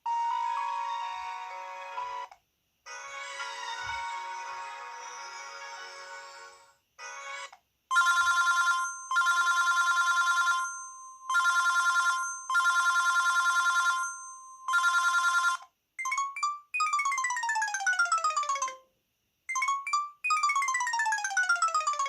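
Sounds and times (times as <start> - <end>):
phone ringtone bell trill: 7.0 - 18.8, 19.5 - 22.0.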